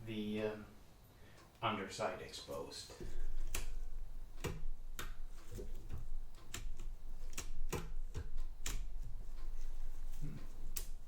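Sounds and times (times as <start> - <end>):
calculator mechanism clicking: 3.0 - 9.8.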